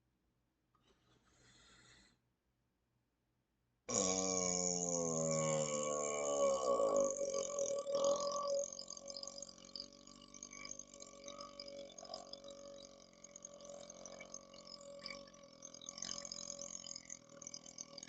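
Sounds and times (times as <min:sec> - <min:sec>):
man burping: 0:03.9 - 0:08.7.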